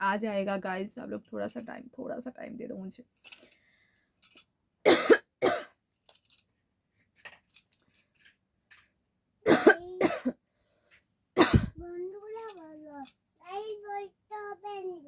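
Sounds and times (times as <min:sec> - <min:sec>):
person coughing: 0:04.9 - 0:05.7, 0:09.5 - 0:10.4, 0:11.4 - 0:11.8.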